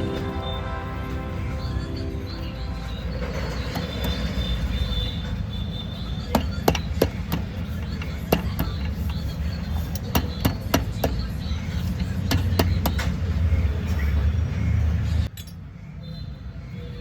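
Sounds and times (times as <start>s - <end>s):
metal tools tapping on engine: 3.2s - 13.3s, 15.2s - 15.7s.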